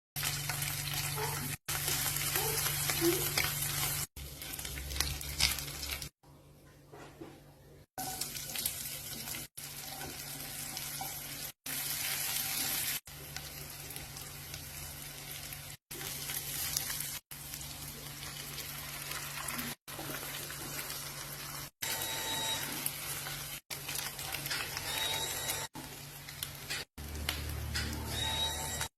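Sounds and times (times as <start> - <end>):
food sizzling in hot oil: 0.2 - 6.2, 8.0 - 28.9.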